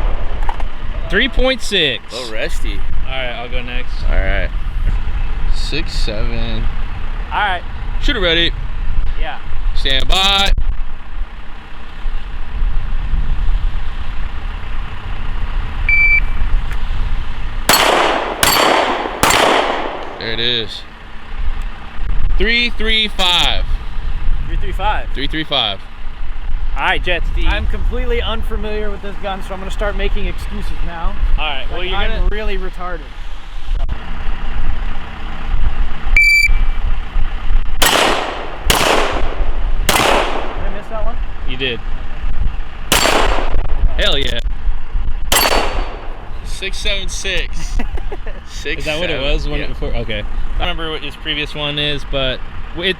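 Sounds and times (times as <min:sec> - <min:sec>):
steady low rumble: 0:00.0 - 0:52.9
shot timer beep: 0:15.9 - 0:16.3, 0:36.2 - 0:36.6
gunshot: 0:17.7 - 0:20.3, 0:37.8 - 0:40.8, 0:42.9 - 0:43.6, 0:45.3 - 0:46.2.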